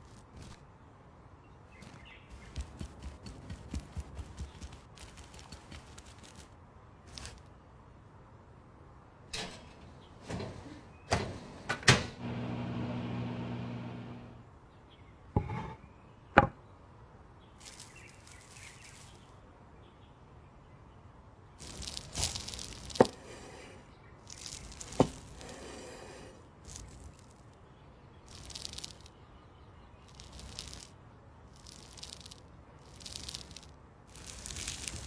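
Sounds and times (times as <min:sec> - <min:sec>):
electric motor hum: 0:12.2 - 0:14.4.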